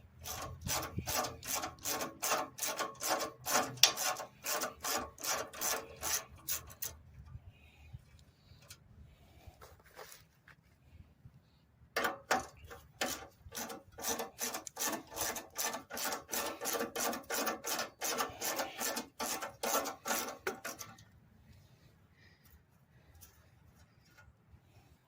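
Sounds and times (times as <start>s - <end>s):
rapid scraping strokes: 0.0s - 7.0s, 12.0s - 21.9s.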